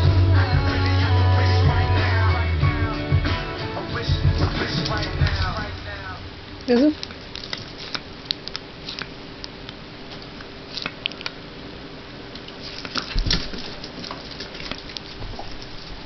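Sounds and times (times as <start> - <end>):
light clicks and patter: 12.4 - 16.0.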